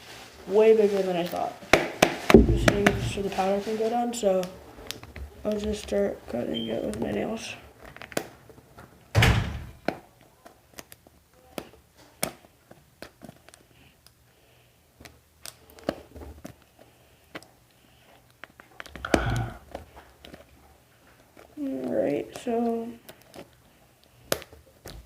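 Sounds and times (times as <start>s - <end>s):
handling knock: 2.3s - 3.5s.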